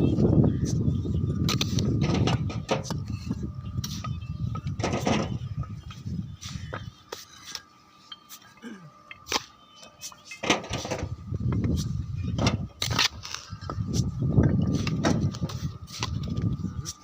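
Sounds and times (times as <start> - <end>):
scraping and shuffling: 0.0 - 8.6.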